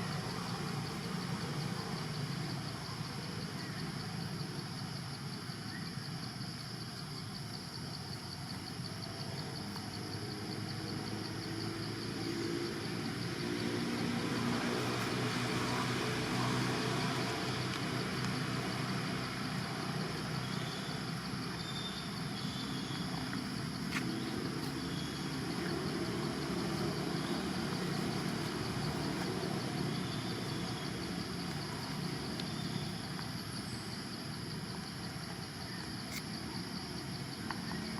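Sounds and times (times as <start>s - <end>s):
insects chirring: 0.0s - 37.9s
motor vehicle passing: 22.9s - 33.0s.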